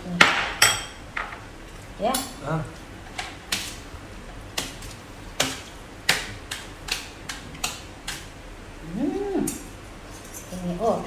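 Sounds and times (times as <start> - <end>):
utensils clicking on plates: 9.4 - 11.0.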